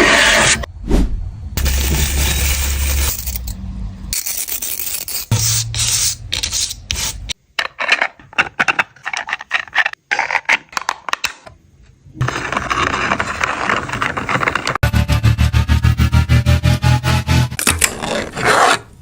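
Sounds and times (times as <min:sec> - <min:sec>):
plastic toy scraping and clicking: 0:06.3 - 0:11.3.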